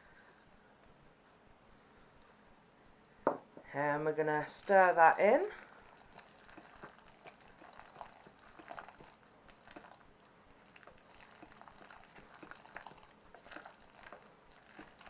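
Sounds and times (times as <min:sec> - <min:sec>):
spoon stirring thick food: 0:05.6 - 0:15.0.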